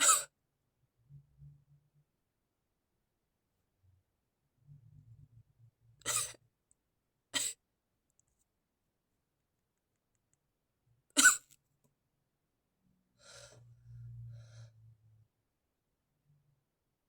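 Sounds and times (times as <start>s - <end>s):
stifled sneeze: 0.0s - 0.3s, 6.0s - 6.4s, 7.4s - 7.6s, 11.2s - 11.6s.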